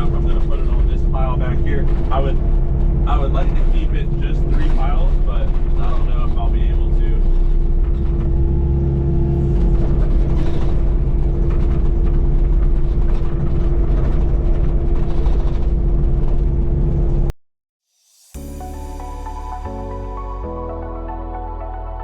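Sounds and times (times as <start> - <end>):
constant whine: 0.0 - 17.3
excavator diesel engine running: 0.0 - 17.3.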